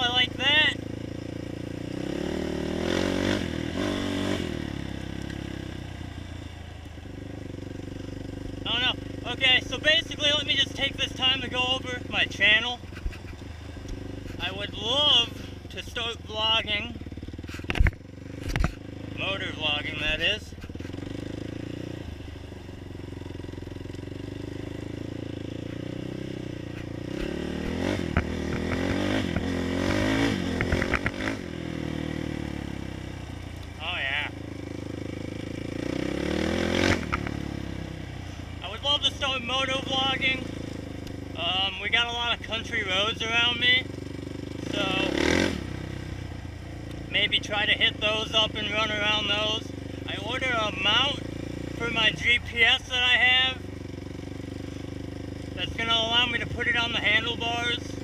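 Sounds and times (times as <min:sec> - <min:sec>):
quad engine revving: 0:00.0 - 0:58.0
knocks and clatter over rough ground: 0:12.8 - 0:14.4, 0:17.4 - 0:19.0, 0:20.0 - 0:21.2, 0:26.6 - 0:29.6, 0:30.5 - 0:31.2, 0:37.0 - 0:37.4.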